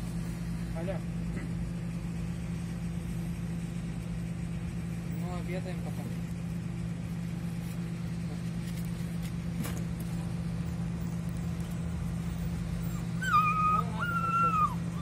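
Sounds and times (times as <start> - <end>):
engine idling: 0.0 - 15.0
puppy whining: 11.1 - 15.0.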